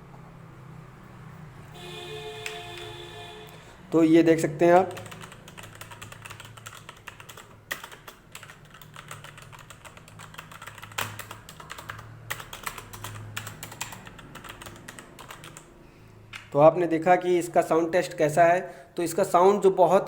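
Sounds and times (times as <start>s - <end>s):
mechanical keyboard typing: 4.8s - 15.7s.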